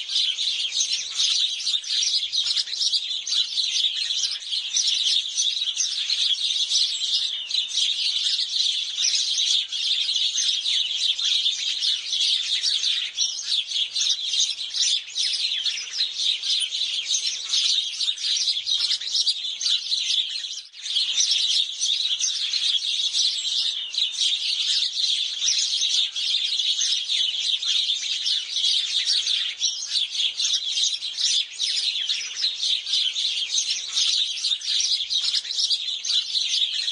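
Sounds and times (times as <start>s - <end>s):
sparrows chirping: 0.0s - 36.9s.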